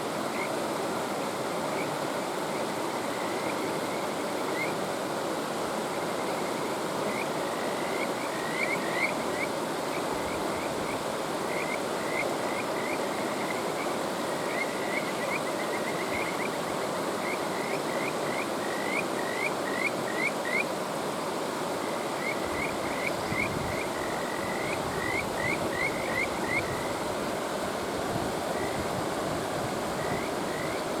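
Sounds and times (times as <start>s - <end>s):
mountain stream rushing: 0.0s - 31.0s
frogs calling with whistle-like notes: 0.2s - 0.6s, 1.6s - 4.8s, 5.8s - 20.8s, 21.7s - 31.0s.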